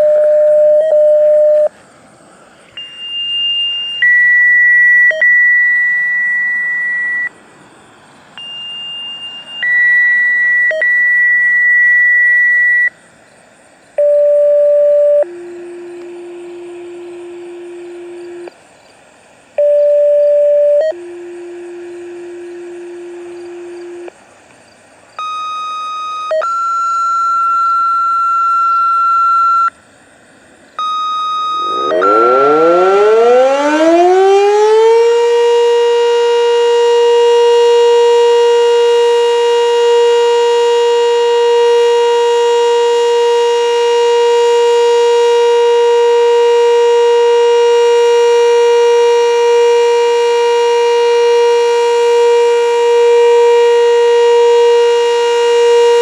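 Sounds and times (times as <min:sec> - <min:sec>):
electronic beep tones: 0:30.8 - 0:33.4
tornado siren winding up: 0:30.8 - 0:56.0.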